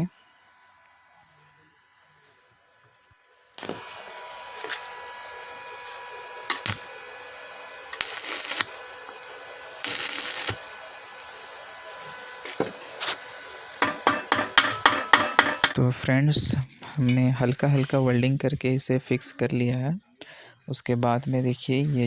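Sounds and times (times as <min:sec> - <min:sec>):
electrical hum: 0:00.0 - 0:22.0
arc welding crackling bursts: 0:07.9 - 0:09.0, 0:09.8 - 0:10.8.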